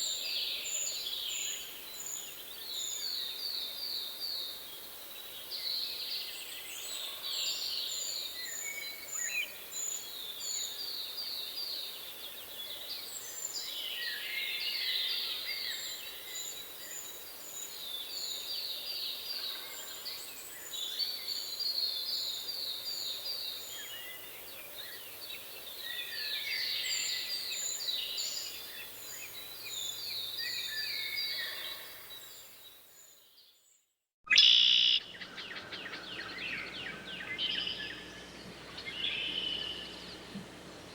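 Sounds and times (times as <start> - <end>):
songbird trilling: 34.3 - 40.9.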